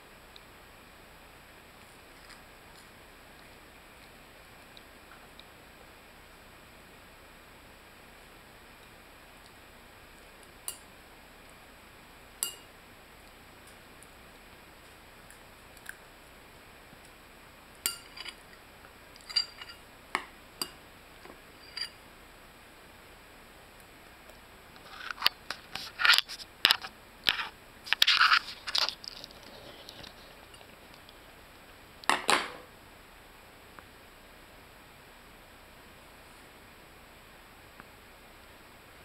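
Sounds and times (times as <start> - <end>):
spoon clicking in bowl: 12.4 - 12.7, 17.9 - 18.2.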